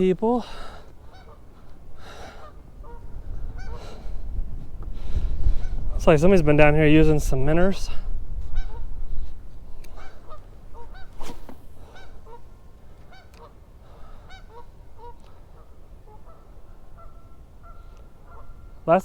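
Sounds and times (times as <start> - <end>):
geese honking: 0.0 - 4.1, 8.5 - 9.0, 9.8 - 19.0.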